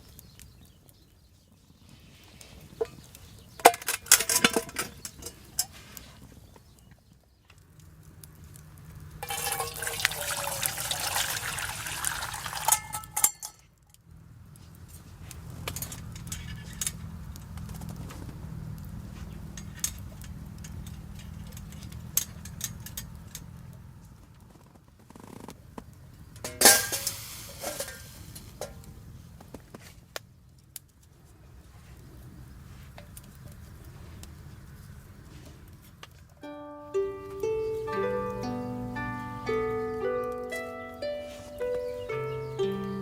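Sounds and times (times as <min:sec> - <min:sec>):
camp cookware clicks and knocks: 0:03.6 - 0:05.7, 0:09.2 - 0:11.3, 0:11.9 - 0:13.6, 0:26.4 - 0:28.8
liquid being poured: 0:09.2 - 0:13.2.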